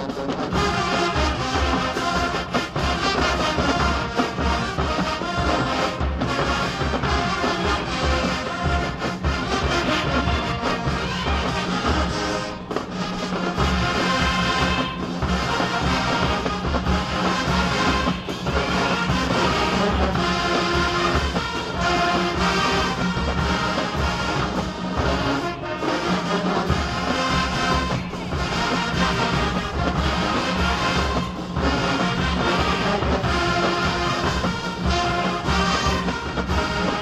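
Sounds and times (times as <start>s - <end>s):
marching band playing: 0.0s - 37.0s.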